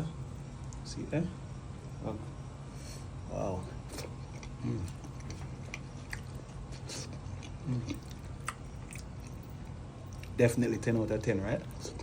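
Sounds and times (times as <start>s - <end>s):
low hums of enjoyment: 0.0s - 12.0s
person chewing food: 3.7s - 10.4s.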